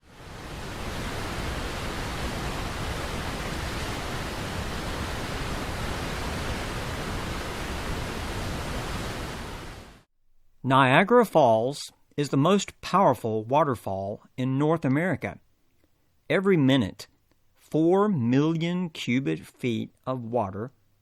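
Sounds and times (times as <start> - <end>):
waterfall rushing: 0.0 - 10.1.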